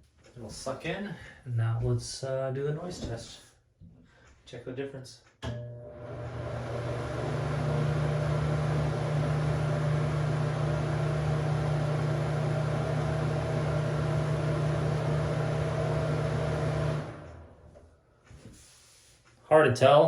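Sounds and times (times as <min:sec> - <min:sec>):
exhaust fan motor hum: 0:05.8 - 0:17.7.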